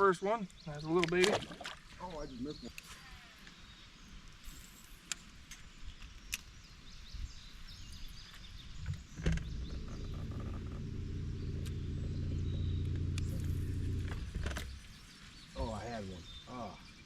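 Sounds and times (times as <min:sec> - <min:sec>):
boat motor humming: 0:08.9 - 0:15.0.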